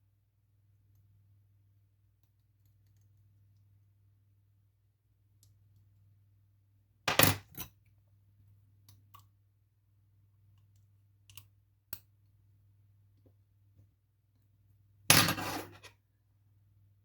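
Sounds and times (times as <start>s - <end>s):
metal parts clattering on hard surface: 15.1s - 15.9s.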